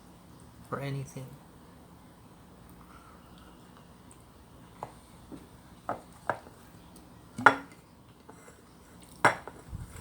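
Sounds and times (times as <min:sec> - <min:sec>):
tableware clinking and knocking: 0:07.4 - 0:08.6, 0:09.2 - 0:09.7.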